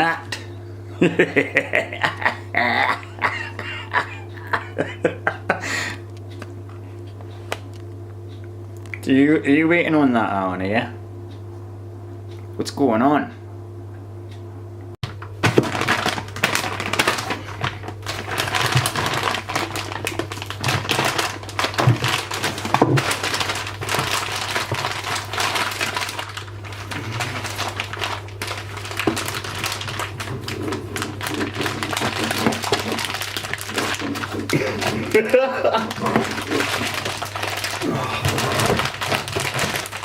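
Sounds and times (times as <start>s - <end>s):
steady low hum: 0.0s - 40.0s
packaging crackling and crinkling: 15.1s - 40.0s.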